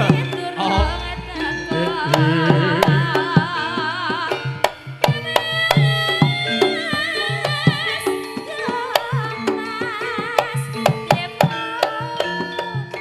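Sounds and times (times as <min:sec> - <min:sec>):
melody with wavering vibrato: 0:00.7 - 0:02.8
hand drum strokes: 0:00.7 - 0:03.4.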